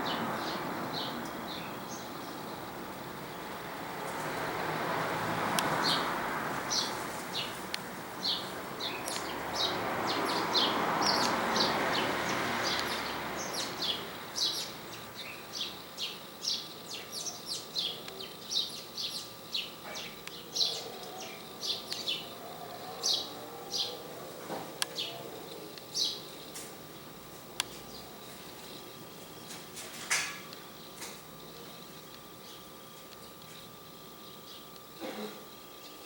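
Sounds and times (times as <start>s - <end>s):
small birds chirping: 0.0s - 4.4s, 5.6s - 36.0s.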